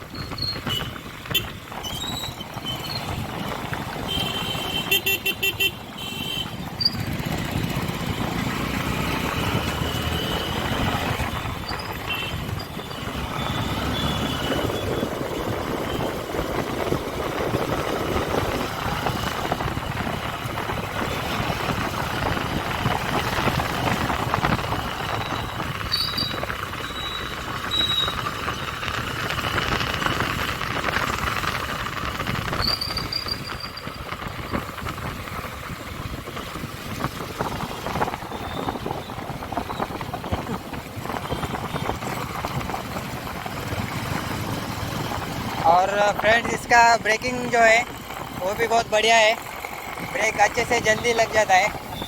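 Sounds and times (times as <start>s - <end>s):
motorcycle engine running: 0.0s - 52.0s
wind and road noise: 0.0s - 52.0s.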